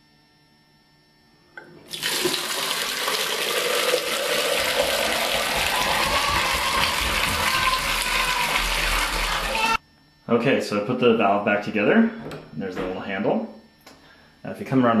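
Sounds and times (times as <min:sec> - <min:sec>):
water gushing from shower valve: 0:01.9 - 0:09.8.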